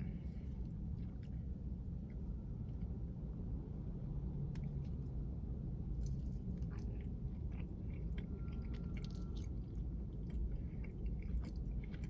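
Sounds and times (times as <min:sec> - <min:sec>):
person chewing: 0:06.6 - 0:12.0.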